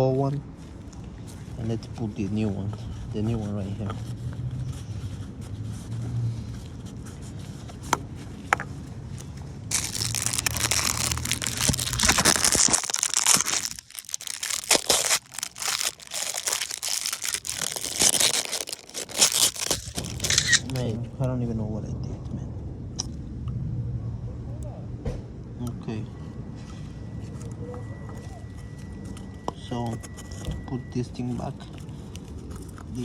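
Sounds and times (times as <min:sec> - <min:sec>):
plastic wrapping crinkling: 0:09.7 - 0:21.0.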